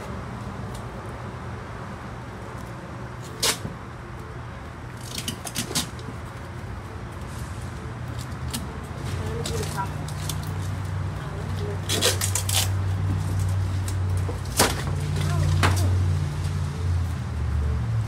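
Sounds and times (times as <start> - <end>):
tape ripping: 3.2 - 3.7, 5.0 - 6.0, 11.8 - 15.9.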